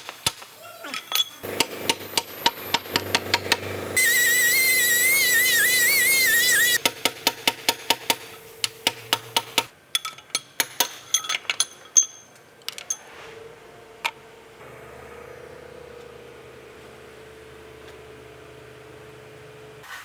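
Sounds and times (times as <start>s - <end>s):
metal tools clinking: 0.9s - 3.2s, 9.9s - 13.1s.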